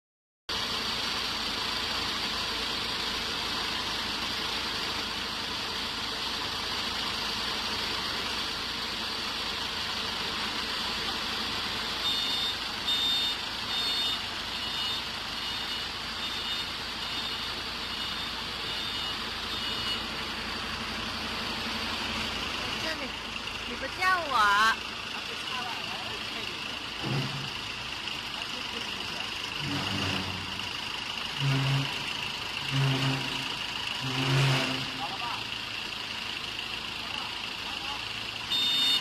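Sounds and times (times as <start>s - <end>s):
diesel generator running: 0.5s - 39.0s
short high beeps: 12.0s - 20.0s, 38.5s - 39.0s.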